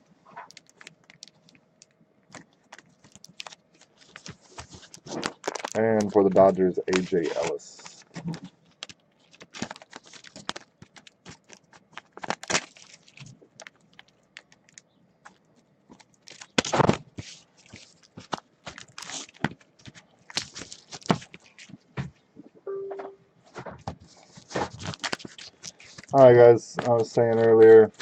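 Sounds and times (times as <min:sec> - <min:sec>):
cards and sleeves rustling: 0:02.3 - 0:22.0, 0:23.5 - 0:28.0
card scrape: 0:06.4 - 0:08.4.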